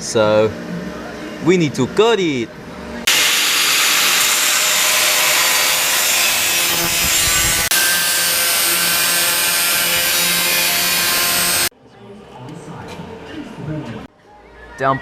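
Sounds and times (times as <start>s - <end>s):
power tool cutting metal: 3.1s - 11.7s.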